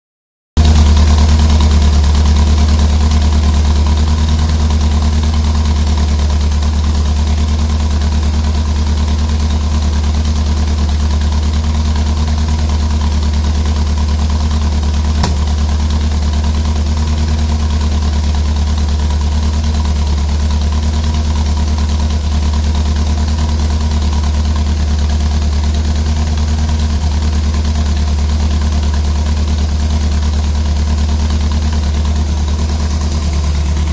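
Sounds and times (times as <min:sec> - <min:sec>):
car engine idling with misfire: 0:00.6 - 0:33.9.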